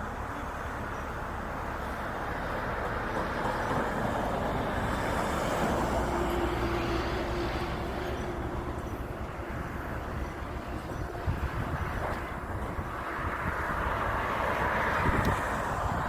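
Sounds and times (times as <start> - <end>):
crane engine running: 0.0 - 16.0
strong wind noise: 8.6 - 16.0.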